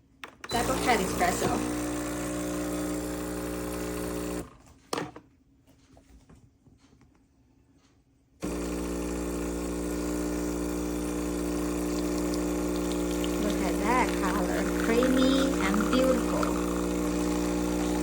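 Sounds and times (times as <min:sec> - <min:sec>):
espresso machine pump humming: 0:00.5 - 0:04.5, 0:08.4 - 0:18.0.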